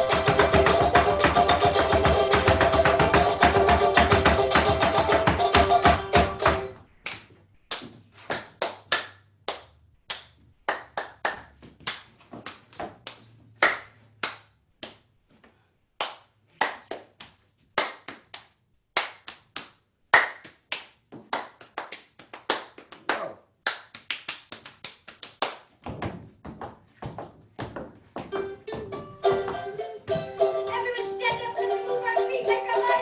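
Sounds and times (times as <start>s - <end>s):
sharp percussive taps: 0.0s - 6.7s.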